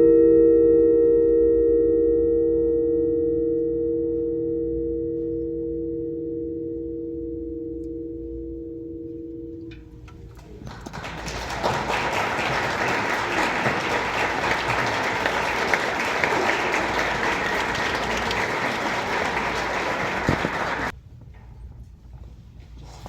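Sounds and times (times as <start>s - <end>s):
crowd applauding: 10.3s - 20.9s.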